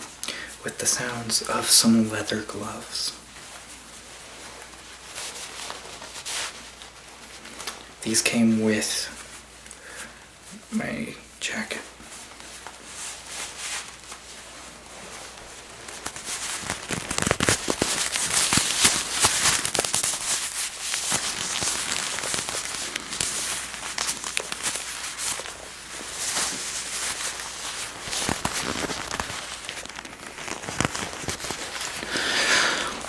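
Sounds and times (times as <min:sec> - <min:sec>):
leather gloves creaking: 0:12.3 - 0:33.0.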